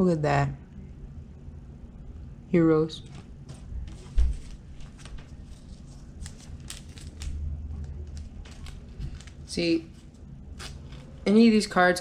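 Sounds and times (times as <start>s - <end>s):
cards being shuffled: 3.0s - 11.2s.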